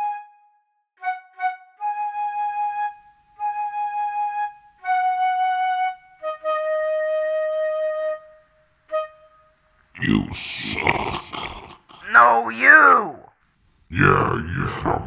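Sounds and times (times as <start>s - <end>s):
flute playing slow solo: 0.0s - 9.6s.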